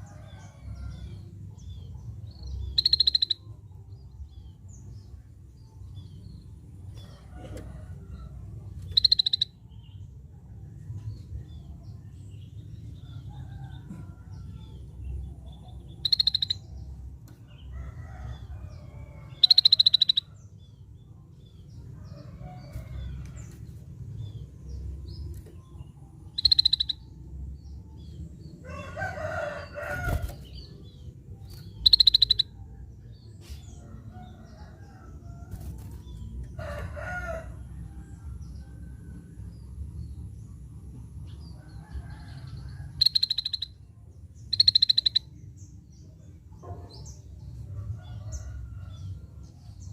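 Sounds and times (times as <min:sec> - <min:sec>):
bulbul giving rattling calls: 0:31.8 - 0:32.4.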